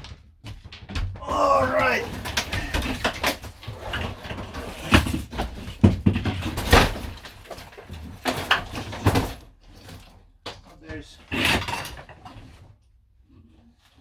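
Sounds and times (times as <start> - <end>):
knocking and clattering: 0.0 - 10.6.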